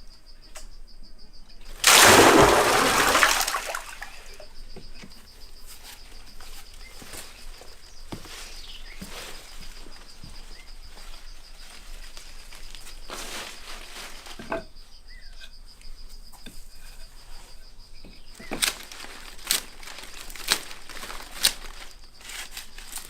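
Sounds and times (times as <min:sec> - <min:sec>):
crickets chirping: 0:00.0 - 0:23.0
rush of splashing water: 0:01.8 - 0:04.4.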